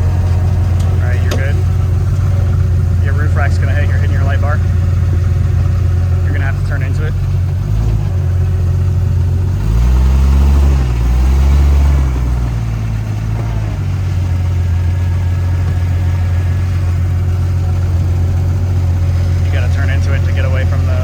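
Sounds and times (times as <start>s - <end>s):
off-road vehicle engine running: 0.0s - 21.0s.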